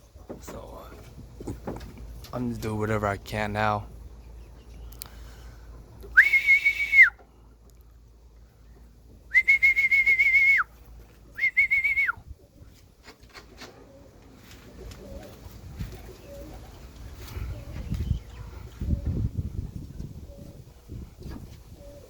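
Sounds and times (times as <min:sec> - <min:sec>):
quiet clicks: 0:04.9 - 0:05.2
loud high whistle blasts: 0:06.2 - 0:07.2, 0:09.3 - 0:10.6
pigeons cooing: 0:12.3 - 0:22.0.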